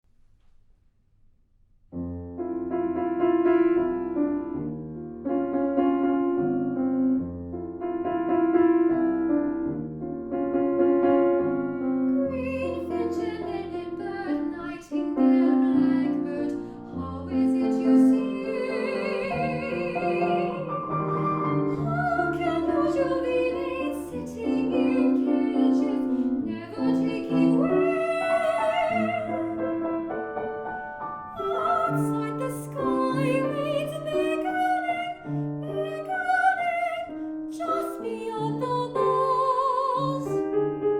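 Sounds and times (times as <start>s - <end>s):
piano chords: 1.9s - 40.9s
woman singing operatically: 12.3s - 29.8s, 31.4s - 40.4s.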